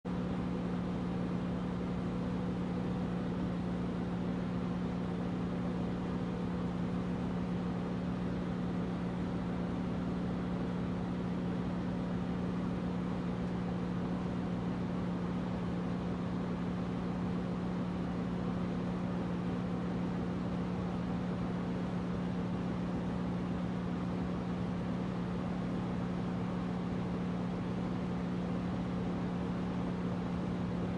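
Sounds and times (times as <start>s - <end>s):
air conditioner humming: 0.0s - 30.9s.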